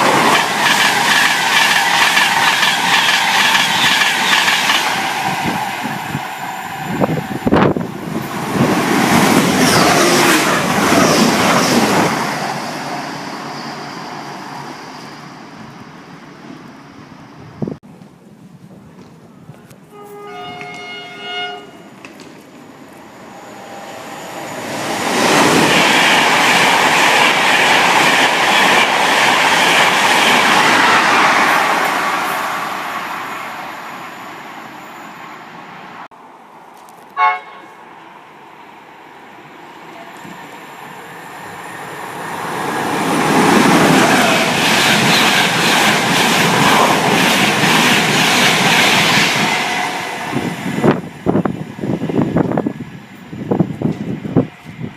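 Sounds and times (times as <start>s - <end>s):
train passing at speed: 0.0s - 17.8s, 19.9s - 54.9s
train horn blast: 19.9s - 21.9s, 37.2s - 37.8s.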